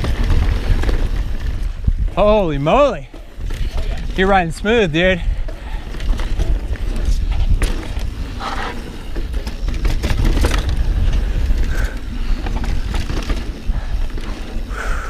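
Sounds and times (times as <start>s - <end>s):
bike knocks and rattles: 0.0s - 4.5s, 5.1s - 14.7s
bike tyres rolling on dirt: 0.0s - 15.0s
wind rumbling on microphone: 0.0s - 15.0s.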